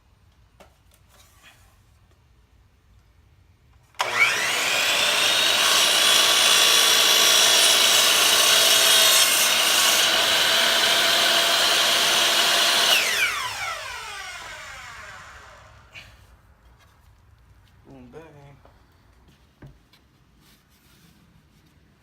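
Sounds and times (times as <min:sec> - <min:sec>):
power saw cutting wood: 0:04.0 - 0:15.9.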